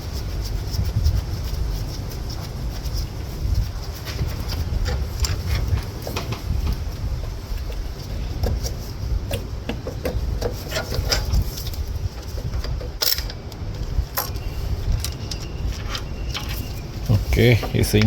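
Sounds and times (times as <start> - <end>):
steady low rumble: 0.0 - 18.0
hand tools clanking on engine parts: 9.3 - 11.6.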